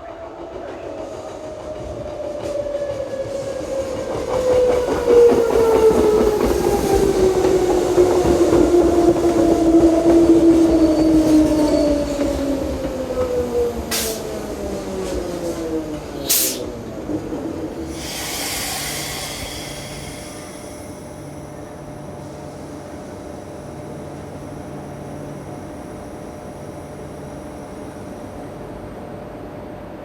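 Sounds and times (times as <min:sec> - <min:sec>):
monorail train whine: 0:00.0 - 0:30.0
train humming: 0:00.0 - 0:30.0
air hiss: 0:16.2 - 0:16.7, 0:17.9 - 0:21.4.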